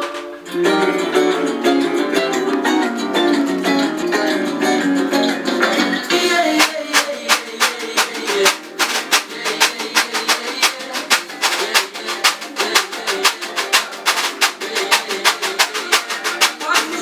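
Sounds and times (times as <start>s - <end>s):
pagode music: 0.0s - 17.0s
scraper percussion scrapes: 6.1s - 17.0s.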